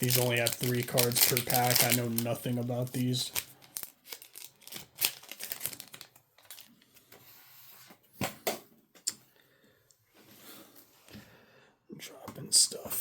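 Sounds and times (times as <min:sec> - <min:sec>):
trading cards being handled: 0:00.0 - 0:06.7.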